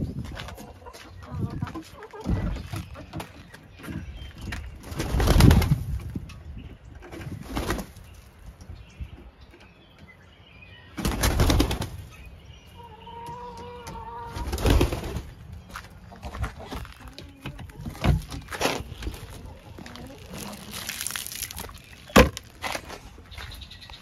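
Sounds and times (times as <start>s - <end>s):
chicken calls and chirps: 0.0s - 5.2s, 11.9s - 22.2s
chickens flapping wings: 4.8s - 6.2s, 7.1s - 8.1s, 11.0s - 12.1s, 14.3s - 15.3s.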